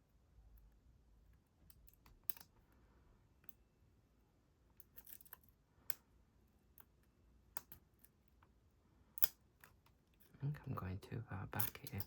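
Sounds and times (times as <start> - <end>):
lock pick clicking and scraping: 1.7 - 2.6, 9.2 - 10.3.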